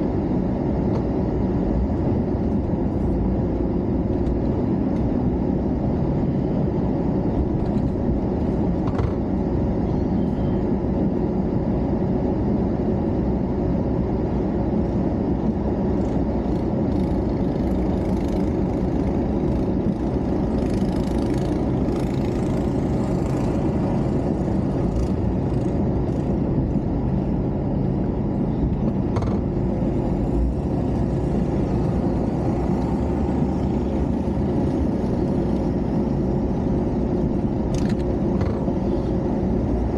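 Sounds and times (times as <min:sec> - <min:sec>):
engine droning: 0:00.0 - 0:39.9
faint engine whine: 0:00.0 - 0:39.9.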